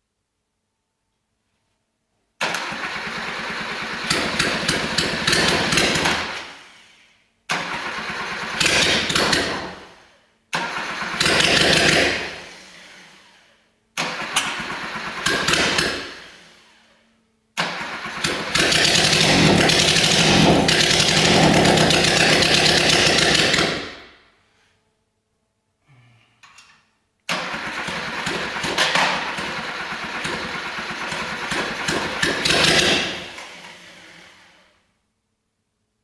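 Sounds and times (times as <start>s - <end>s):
car engine starting and running: 17.6s - 23.9s.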